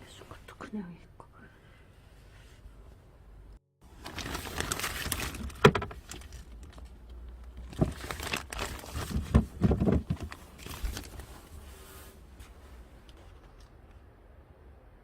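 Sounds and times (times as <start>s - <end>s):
rustling and crinkling: 3.9s - 14.1s
knocks and thuds: 9.0s - 10.4s.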